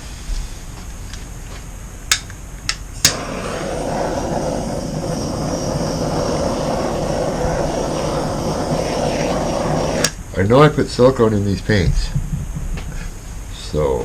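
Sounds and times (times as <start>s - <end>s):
heat tool blowing: 3.0s - 10.2s.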